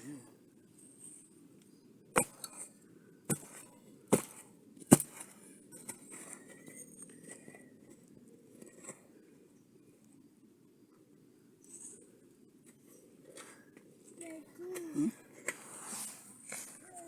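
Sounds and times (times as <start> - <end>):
digging tool striking hard earth: 2.2 - 2.7, 3.3 - 6.4
faint scraping: 12.7 - 17.0.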